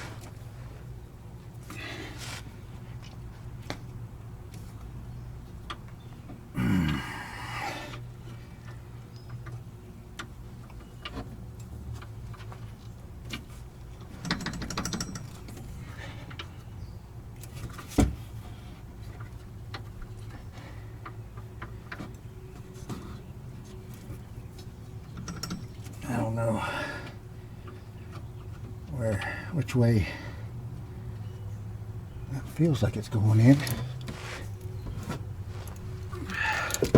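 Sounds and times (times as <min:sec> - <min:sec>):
steady low hum: 0:00.0 - 0:36.9
hand tools clicking and knocking: 0:35.0 - 0:36.9.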